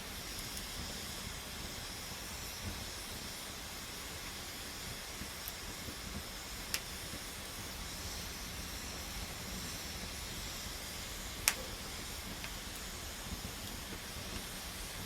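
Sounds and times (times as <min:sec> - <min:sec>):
campfire burning with a hiss: 0:00.0 - 0:15.0
wood crackling pops: 0:11.4 - 0:14.5.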